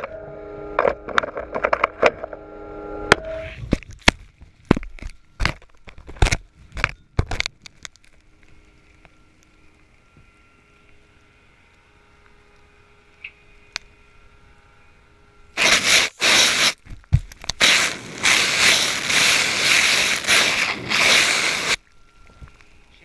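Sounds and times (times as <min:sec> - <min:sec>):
loud rushing noise in pipeline: 0:17.6 - 0:21.8.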